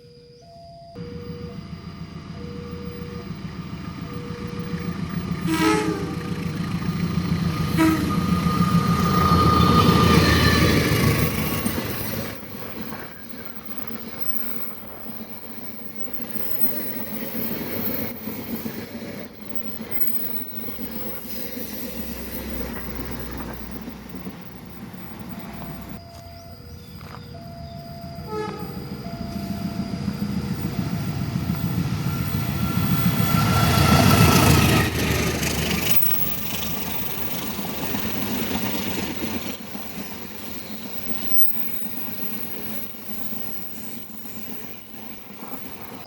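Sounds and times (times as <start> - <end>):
train wheels rumbling on rails: 0.8 - 46.0
train horn blasts: 5.3 - 6.6, 7.6 - 10.9, 28.0 - 30.2.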